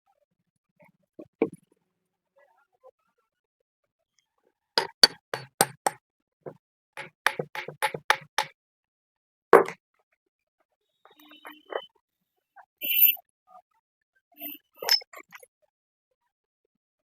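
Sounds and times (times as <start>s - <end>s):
sharp clicks and knocks on pump: 4.8s - 6.0s, 7.0s - 8.5s, 9.6s - 9.8s.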